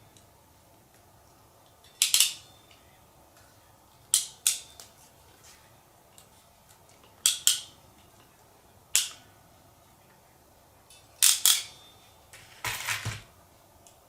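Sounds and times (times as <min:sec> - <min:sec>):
metal tool clicks and snaps: 0:02.0 - 0:02.4, 0:07.2 - 0:07.7, 0:09.0 - 0:09.2, 0:11.2 - 0:11.7.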